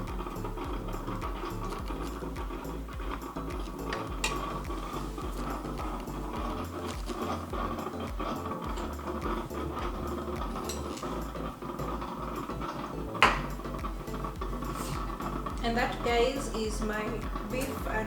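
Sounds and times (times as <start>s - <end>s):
steady background hum: 0.0s - 18.0s
dishes and utensils knocking: 0.7s - 18.0s.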